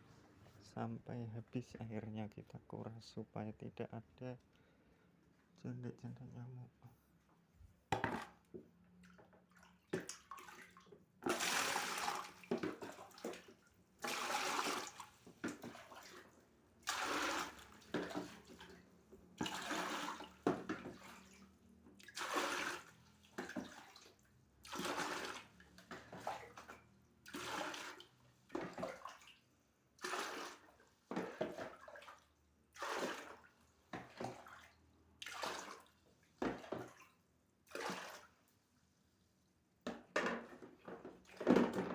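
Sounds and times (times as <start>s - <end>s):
water splashing when poured: 9.6s - 16.2s, 16.8s - 18.7s, 19.4s - 24.1s.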